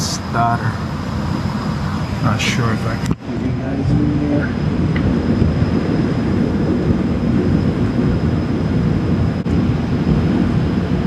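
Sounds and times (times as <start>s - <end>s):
faint high whine: 0.0s - 11.0s
low rumbling noise: 0.0s - 11.0s.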